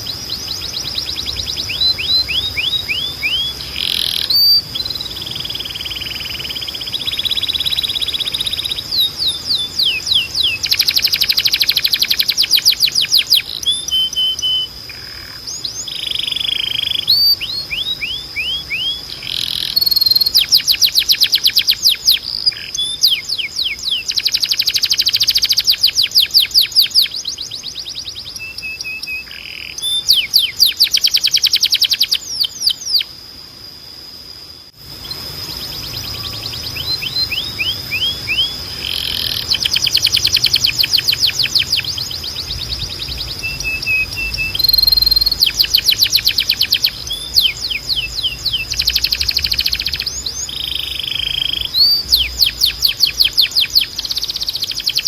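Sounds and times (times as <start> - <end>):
canary singing trills: 0.0 - 34.2, 34.8 - 55.0
steady high tone: 34.7 - 54.0.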